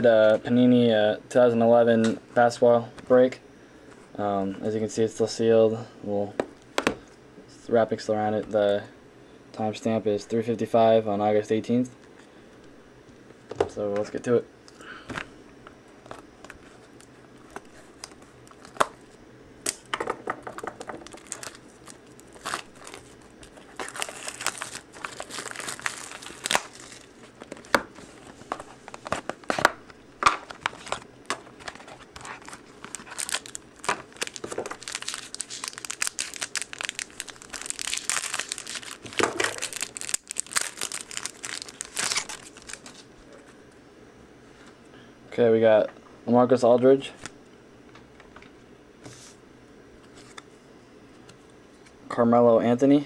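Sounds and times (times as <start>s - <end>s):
plastic wrap tearing and crinkling: 20.6s - 43.1s.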